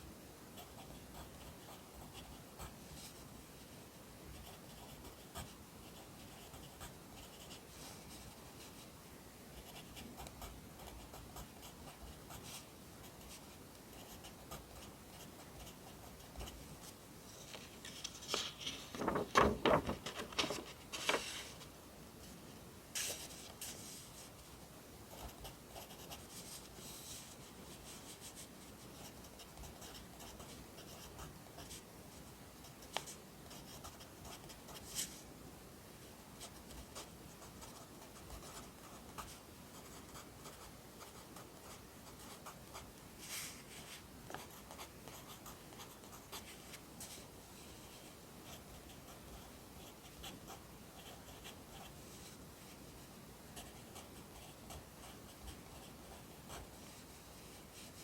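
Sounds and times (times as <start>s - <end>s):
pencil writing on paper: 25.1s - 31.8s.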